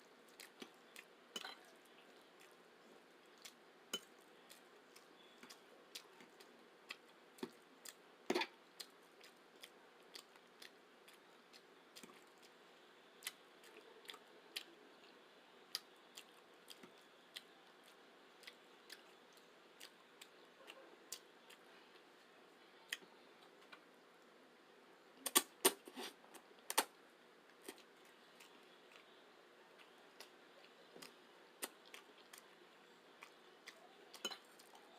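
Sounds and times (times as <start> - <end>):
person chewing: 3.3 - 12.6, 15.7 - 22.1, 27.5 - 34.9.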